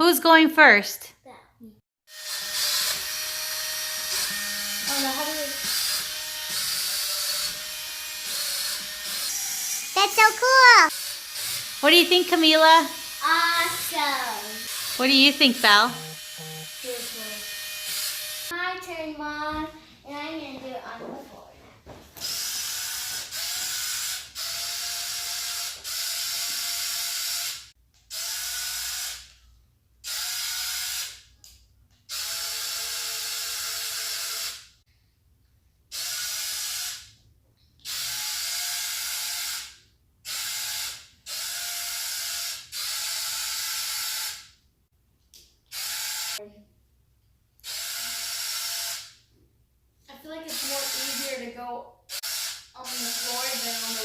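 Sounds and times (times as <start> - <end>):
toy car motors whirring: 2.1 - 18.6, 22.2 - 29.4, 30.0 - 34.7, 35.9 - 37.2, 37.8 - 44.6, 45.7 - 46.4, 47.6 - 49.2, 50.4 - 51.5, 52.1 - 54.0.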